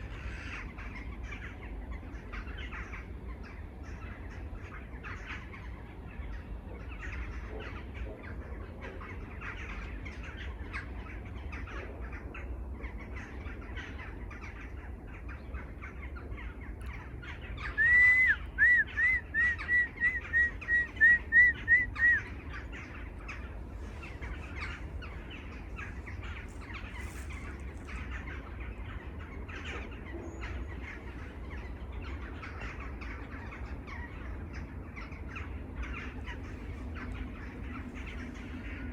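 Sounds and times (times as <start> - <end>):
birds chattering and calling: 0.0 - 38.9
bird whistling clear notes: 17.7 - 22.2.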